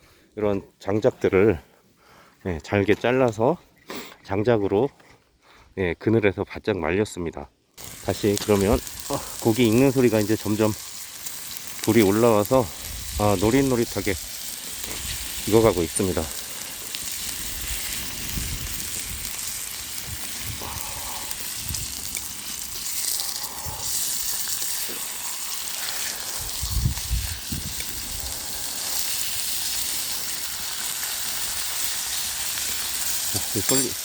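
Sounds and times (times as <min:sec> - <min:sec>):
fat sizzling: 0:07.8 - 0:34.0.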